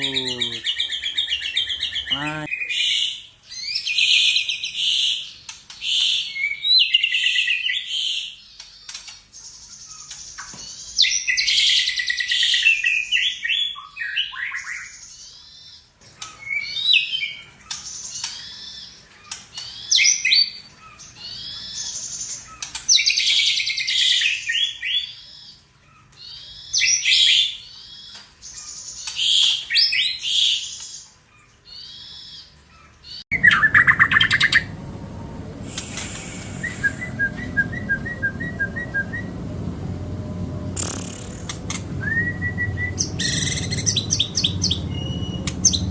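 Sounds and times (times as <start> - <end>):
bird singing whistles and chirps: 33.3 - 34.8, 35.7 - 39.6, 40.8 - 45.9
loud low rumbling noise: 33.3 - 45.9.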